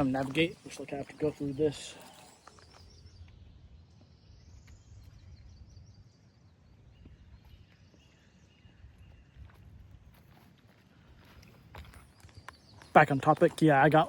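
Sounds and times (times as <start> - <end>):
faint bird chirps: 0.0 - 9.8.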